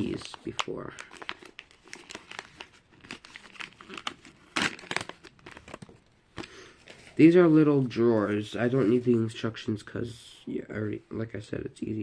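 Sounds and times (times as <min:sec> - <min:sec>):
plastic packaging crinkling: 0:00.0 - 0:07.2.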